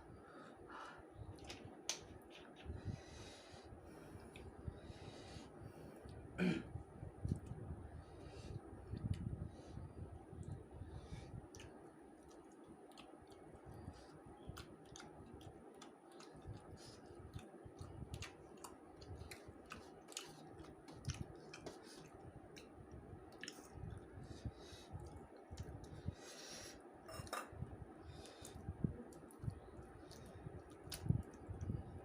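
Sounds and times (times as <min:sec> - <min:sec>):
person chewing food: 0:01.3 - 0:02.8, 0:03.9 - 0:04.6, 0:11.3 - 0:26.3, 0:28.1 - 0:31.8.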